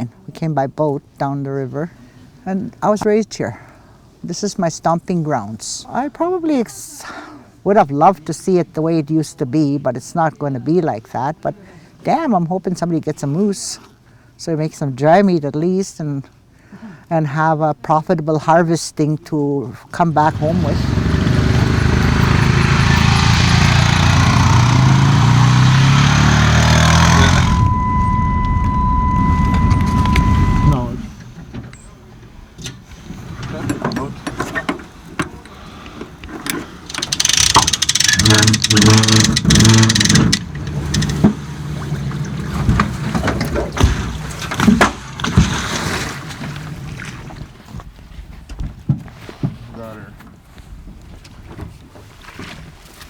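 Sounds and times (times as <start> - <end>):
engine running: 20.3 - 31.8, 36.8 - 45.3
steady high tone: 22.0 - 31.0.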